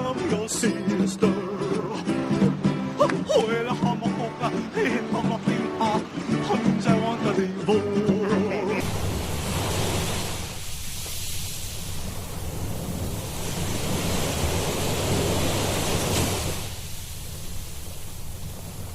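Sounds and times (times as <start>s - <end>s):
ocean surf washing onto beach: 8.2s - 18.9s.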